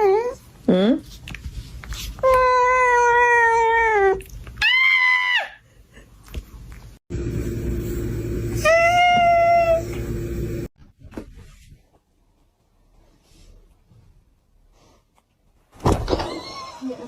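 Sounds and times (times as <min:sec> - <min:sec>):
steady hum: 0:07.1 - 0:10.7.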